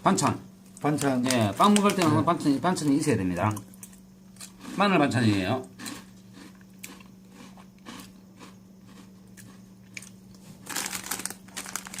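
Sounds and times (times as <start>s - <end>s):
crunching a hard cracker: 5.8s - 12.0s.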